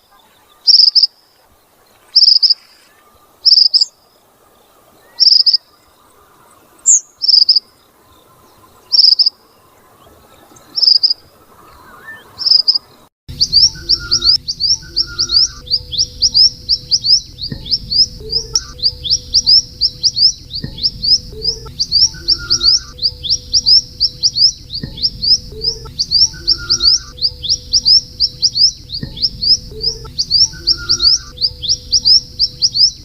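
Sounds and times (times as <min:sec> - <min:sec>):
bird calling high notes: 0:05.0 - 0:33.0
steady low hum: 0:13.3 - 0:33.0.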